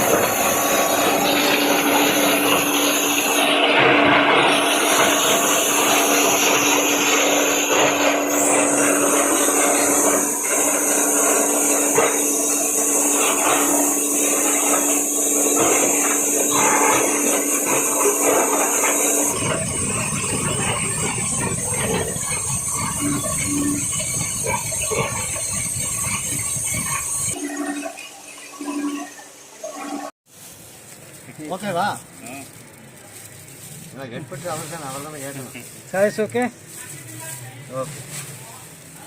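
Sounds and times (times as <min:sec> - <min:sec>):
low machine rumble: 0:00.0 - 0:27.4
shredder humming: 0:00.0 - 0:27.4.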